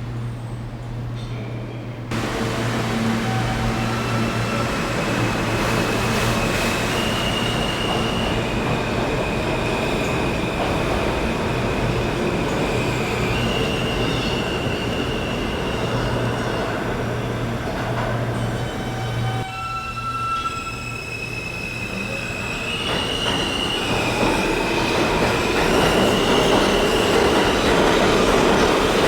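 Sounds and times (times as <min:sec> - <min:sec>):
subway train rumbling: 0:00.0 - 0:29.0
wheel squeal: 0:18.3 - 0:25.1.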